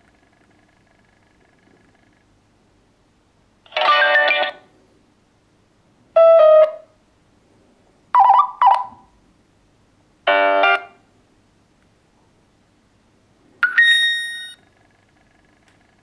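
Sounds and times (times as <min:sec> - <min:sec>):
phone tones: 0:08.2 - 0:09.0, 0:13.6 - 0:14.7.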